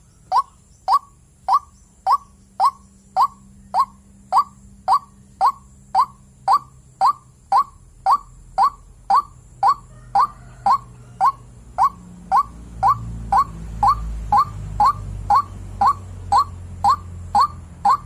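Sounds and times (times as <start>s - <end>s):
bird calling rising note: 0.0s - 18.0s.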